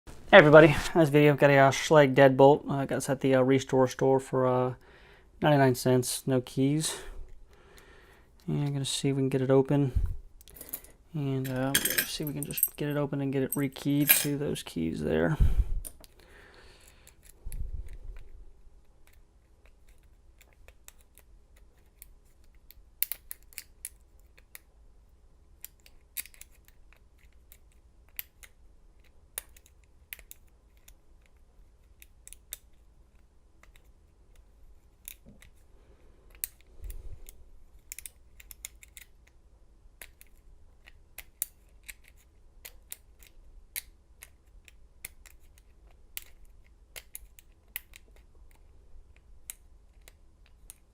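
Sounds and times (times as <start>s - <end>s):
small metallic clicks of lock pick: 19.0s - 24.7s, 25.6s - 32.8s, 33.6s - 35.6s, 36.3s - 39.4s, 40.0s - 50.9s.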